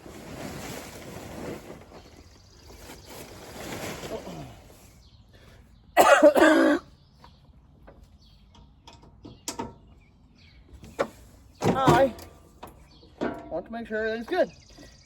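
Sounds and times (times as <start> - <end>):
person clearing throat: 6.0 - 6.9.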